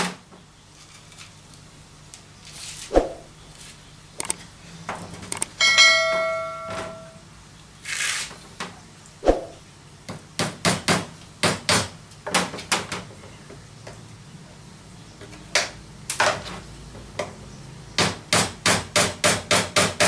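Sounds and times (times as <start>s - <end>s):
metallic clang: 5.4s - 7.2s.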